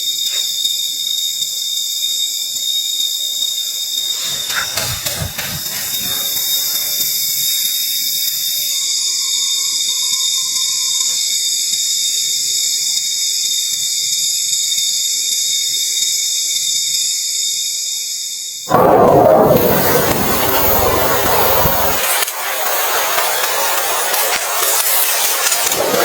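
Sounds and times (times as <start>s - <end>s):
insect chorus buzzing: 0.0s - 18.7s.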